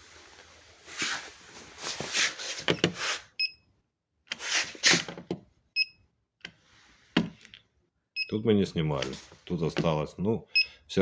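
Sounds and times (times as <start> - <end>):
handling and rustling noise: 0.0 - 3.3, 8.9 - 10.1.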